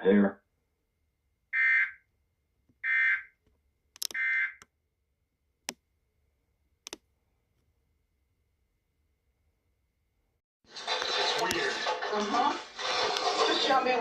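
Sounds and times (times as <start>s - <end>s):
sharp clicks: 3.9s - 4.7s, 6.8s - 7.0s.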